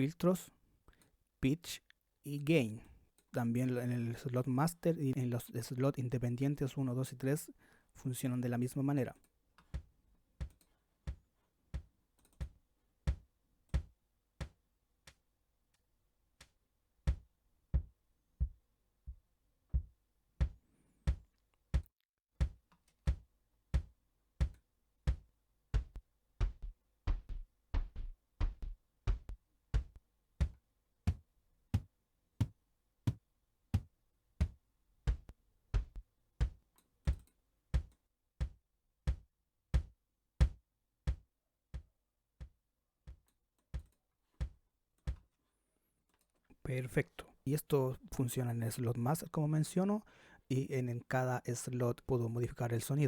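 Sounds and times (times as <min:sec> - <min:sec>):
sampled drum hits: 0:25.8 - 0:31.2.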